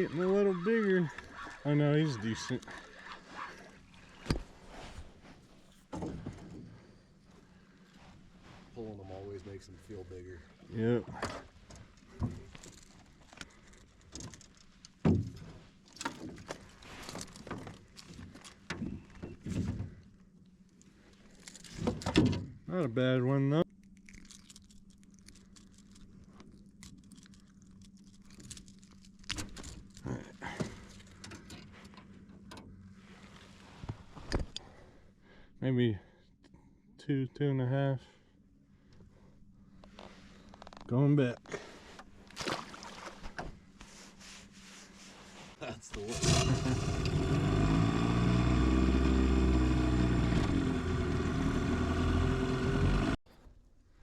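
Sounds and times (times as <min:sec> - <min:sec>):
outboard motor running: 0:00.0 - 0:04.3, 0:46.0 - 0:53.2
knocks and rustles: 0:14.0 - 0:20.0.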